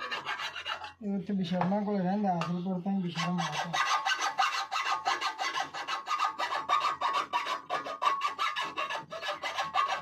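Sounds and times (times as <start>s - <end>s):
blade sharpened by hand rasping: 0.0s - 1.0s, 3.2s - 10.0s.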